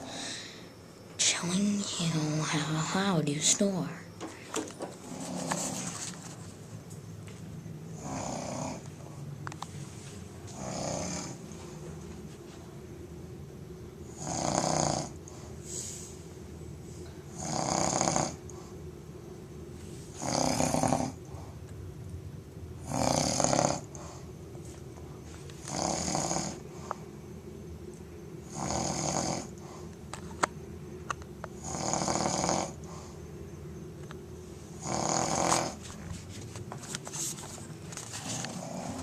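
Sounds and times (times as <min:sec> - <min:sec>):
person snoring loudly: 0:08.0 - 0:08.8, 0:10.5 - 0:11.4, 0:14.1 - 0:15.2, 0:17.3 - 0:18.4, 0:20.1 - 0:21.2, 0:22.8 - 0:23.9, 0:25.6 - 0:26.6, 0:28.4 - 0:29.5, 0:31.6 - 0:32.8, 0:34.8 - 0:35.8.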